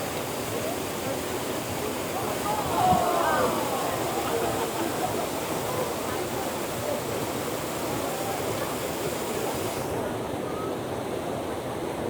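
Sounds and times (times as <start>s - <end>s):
waterfall rushing: 1.9s - 10.0s.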